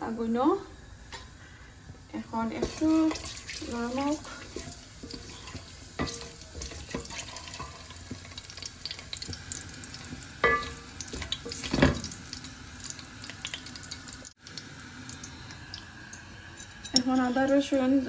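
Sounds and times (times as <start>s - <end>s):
spices sizzling in hot oil: 0.0s - 18.0s
ringing clank: 10.4s - 12.0s.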